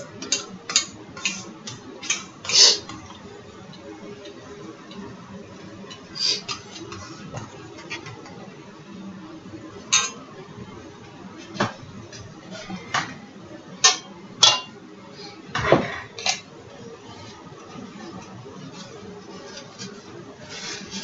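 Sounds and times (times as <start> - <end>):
utensil scraping pan: 0.0 - 3.1, 18.7 - 21.0.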